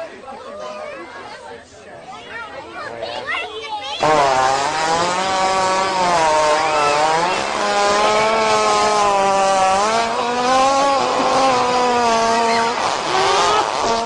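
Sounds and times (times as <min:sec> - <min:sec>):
buzzy fart sound: 0:04.0 - 0:14.0.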